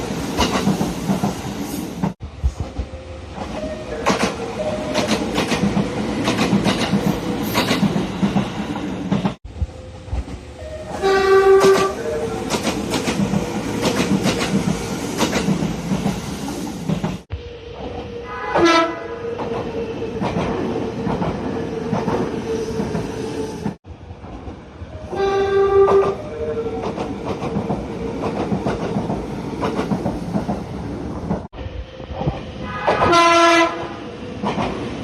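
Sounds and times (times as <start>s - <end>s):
train wheels clattering on rails: 0.0s - 18.1s, 19.4s - 24.6s, 26.8s - 31.5s, 32.1s - 35.0s
train horn blast: 10.6s - 12.4s, 18.2s - 19.4s, 25.0s - 26.8s, 32.6s - 34.0s.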